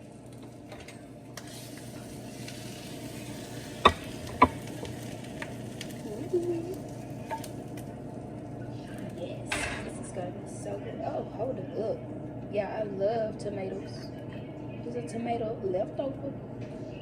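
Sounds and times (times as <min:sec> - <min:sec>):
omelette sizzling in a frying pan: 0:00.0 - 0:09.5.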